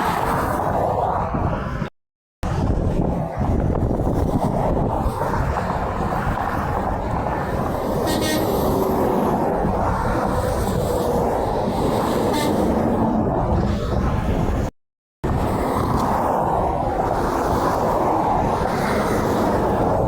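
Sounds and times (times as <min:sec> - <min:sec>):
highway traffic rumble: 0:00.0 - 0:20.0
trucks passing: 0:05.6 - 0:14.6.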